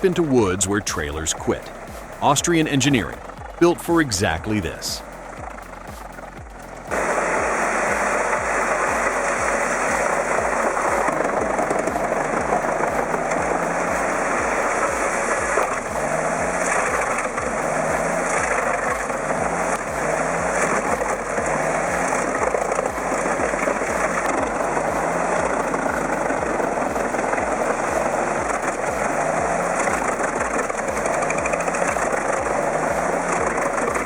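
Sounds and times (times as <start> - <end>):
heavy engine running: 0.0 - 34.0
wood chipper chipping: 0.0 - 34.0.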